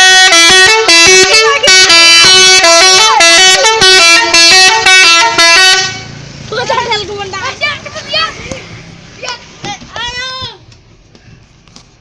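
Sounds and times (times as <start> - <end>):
musical truck horn tune: 0.0 - 6.3.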